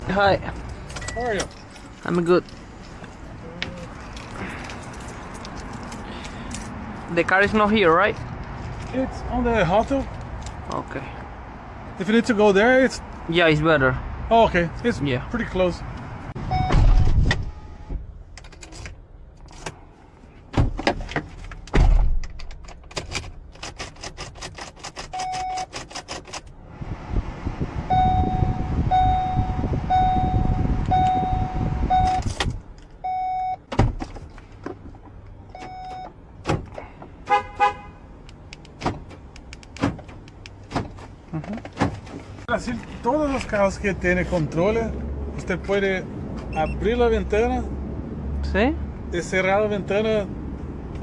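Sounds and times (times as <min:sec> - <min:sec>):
short electronic beeps: 0:27.9 - 0:32.2, 0:33.0 - 0:33.6
car lock clicks: 0:38.2 - 0:41.1.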